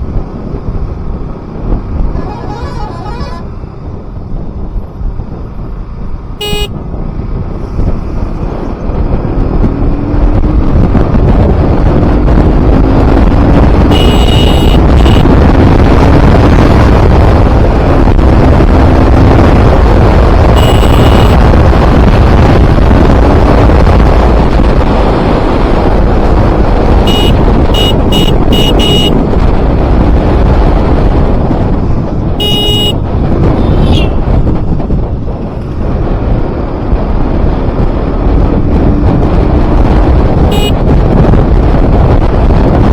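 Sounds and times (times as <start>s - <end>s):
wind and road noise: 0.0s - 42.9s
vehicle horns honking: 2.1s - 3.5s, 6.4s - 6.8s, 13.8s - 15.4s, 20.5s - 21.5s, 27.0s - 29.2s, 32.4s - 34.2s, 40.5s - 40.9s
motorcycle engine accelerating: 7.8s - 42.9s.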